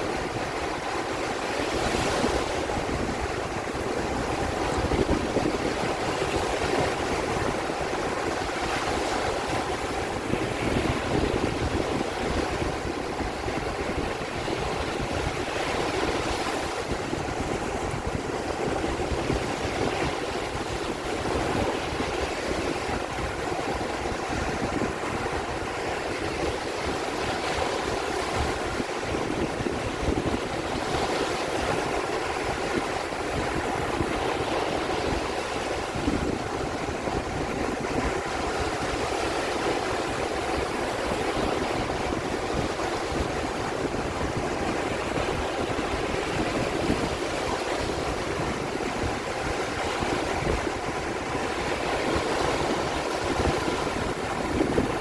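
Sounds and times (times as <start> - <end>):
sea water rushing: 0.0 - 55.0.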